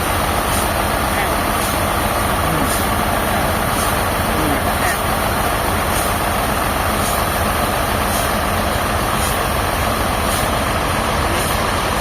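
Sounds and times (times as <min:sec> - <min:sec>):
sawmill engine drone: 0:00.0 - 0:12.0.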